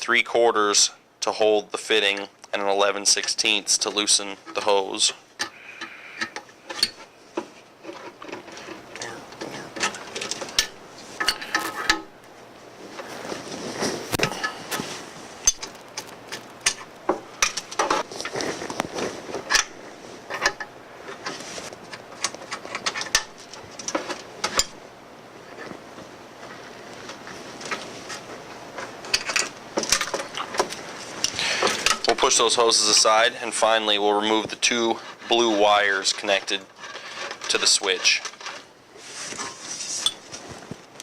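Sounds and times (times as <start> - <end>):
wrenches clicking and clinking: 3.0 - 12.1, 15.4 - 24.8, 26.4 - 38.7
metal scraping and rubbing: 3.0 - 12.2, 26.4 - 40.6.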